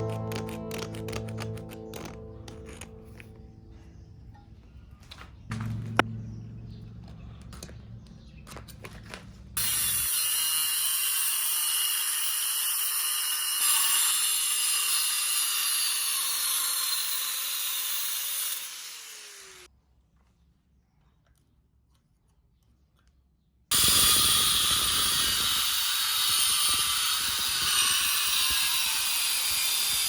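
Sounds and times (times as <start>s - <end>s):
power tool grinding metal: 0.0s - 3.4s, 9.6s - 19.7s, 23.7s - 30.0s.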